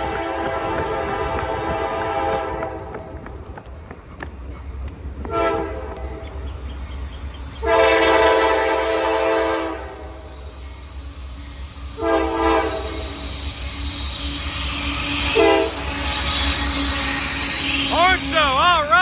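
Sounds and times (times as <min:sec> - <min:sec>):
locomotive air horn blasts: 0:00.0 - 0:02.9, 0:05.3 - 0:06.2, 0:07.6 - 0:10.3, 0:12.0 - 0:13.2, 0:15.2 - 0:17.1, 0:17.8 - 0:19.0.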